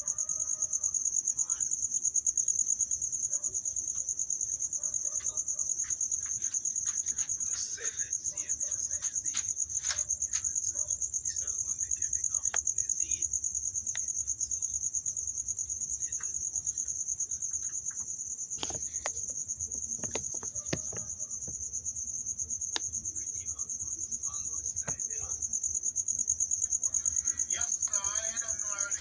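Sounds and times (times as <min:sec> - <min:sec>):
crickets trilling: 0:00.0 - 0:29.0
faint knocks: 0:17.6 - 0:21.8.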